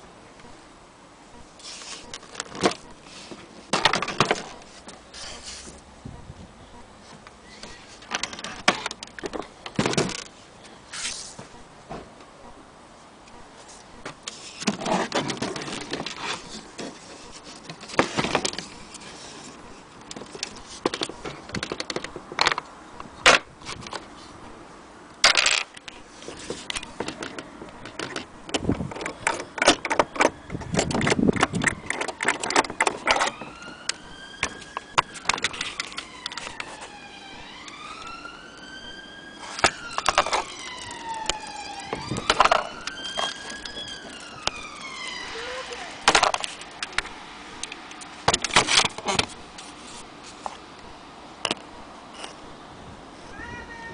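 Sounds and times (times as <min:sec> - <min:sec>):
siren wailing: 0:29.8 - 0:47.4.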